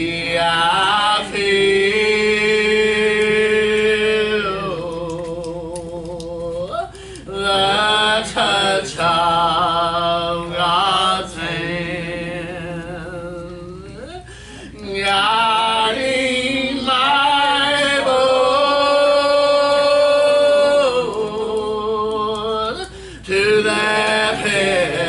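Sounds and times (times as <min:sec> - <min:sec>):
person singing a hymn: 0:00.0 - 0:25.0
singer breathing: 0:06.8 - 0:07.3, 0:14.2 - 0:14.8, 0:22.9 - 0:23.3.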